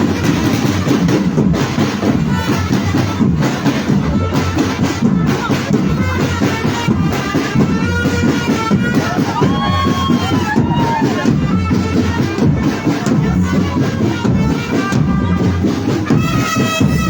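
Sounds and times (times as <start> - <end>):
marching band drumming: 0.0 - 17.0
wind instrument melody: 0.0 - 17.0.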